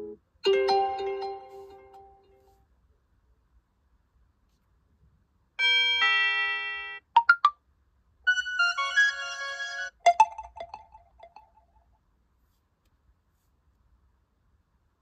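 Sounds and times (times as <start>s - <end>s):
electronic ringtone chimes: 0.5s - 2.0s.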